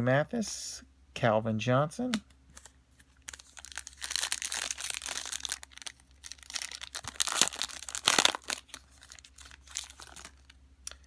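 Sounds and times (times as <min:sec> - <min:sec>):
wrapper crinkling: 0:02.6 - 0:11.0
wrapper ripping: 0:02.6 - 0:11.0.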